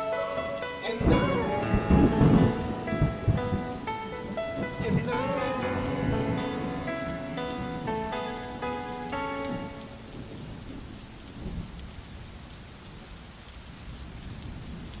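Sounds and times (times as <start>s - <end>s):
song notes: 0.0s - 10.4s
rain falling: 0.0s - 15.0s.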